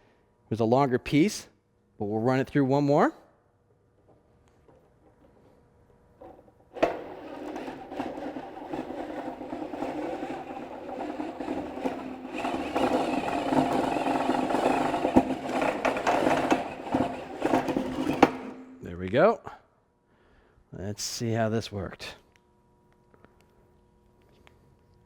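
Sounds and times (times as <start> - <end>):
drill humming: 6.8 - 18.8.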